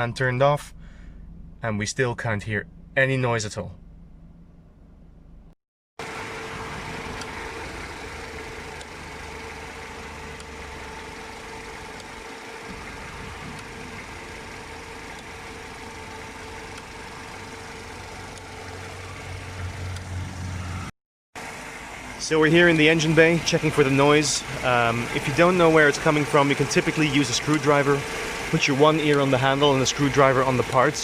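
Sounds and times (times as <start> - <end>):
deep hum: 0.0 - 5.6
car engine idling: 0.2 - 1.7, 6.0 - 31.0.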